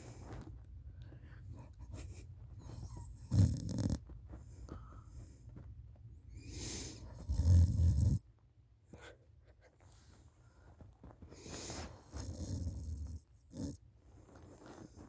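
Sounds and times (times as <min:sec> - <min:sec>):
soft breathing: 0:00.0 - 0:03.3, 0:04.3 - 0:07.4, 0:08.9 - 0:12.8.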